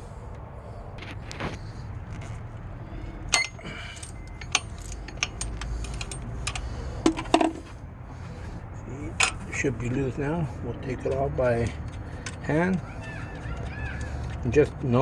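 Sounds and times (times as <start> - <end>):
wrench clicking on metal bolts: 3.3 - 7.5.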